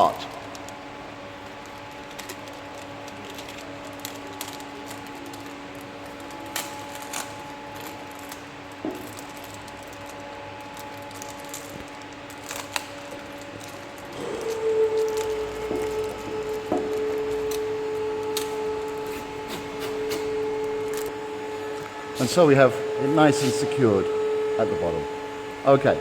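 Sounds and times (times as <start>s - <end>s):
faint clicks and handling sounds: 0.0s - 22.7s
steady low hum: 13.1s - 26.0s.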